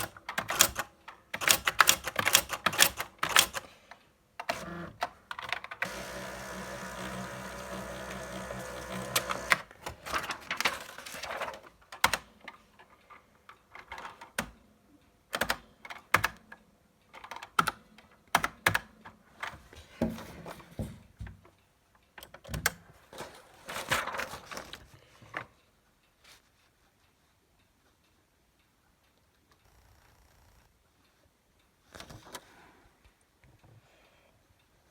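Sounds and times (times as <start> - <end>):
typewriter rattling burst: 0.0 - 3.7, 5.8 - 11.4
typewriter typing clicks: 0.0 - 12.5
typewriter motor whir: 4.5 - 5.0, 5.8 - 11.2.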